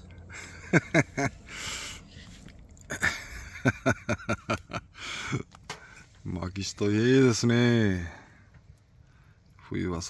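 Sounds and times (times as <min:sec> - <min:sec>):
breathy rush of air: 0:00.3 - 0:03.4, 0:04.8 - 0:06.2.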